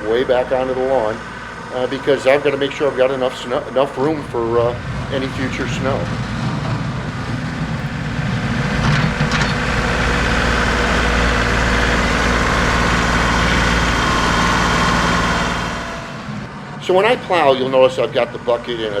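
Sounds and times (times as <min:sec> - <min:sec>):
diesel tractor engine under load: 0:00.0 - 0:19.0.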